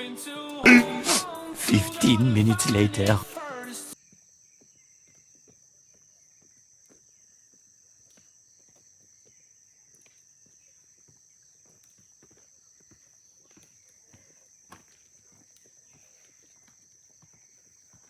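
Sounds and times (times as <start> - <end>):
footsteps on a stony trail: 4.0 - 18.0.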